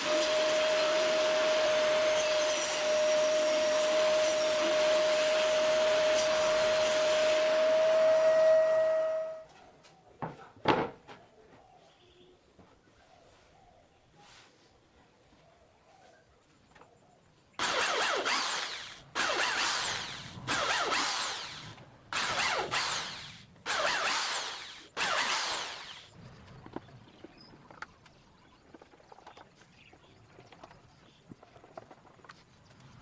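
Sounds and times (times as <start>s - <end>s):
power tool bursts winding down: 0.0s - 9.0s, 17.6s - 26.2s.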